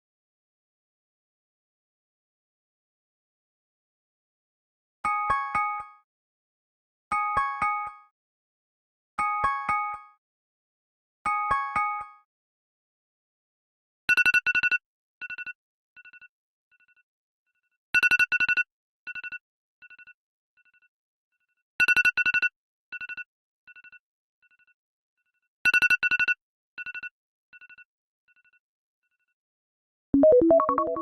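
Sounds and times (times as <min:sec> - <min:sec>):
phone alarm beeps: 0:30.2 - 0:31.0.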